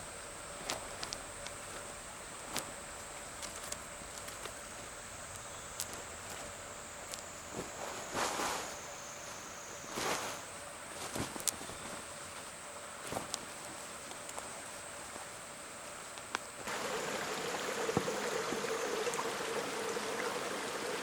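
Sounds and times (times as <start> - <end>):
babbling stream: 0.0 - 21.0
high insect drone: 0.0 - 21.0
short rustles: 0.6 - 16.4.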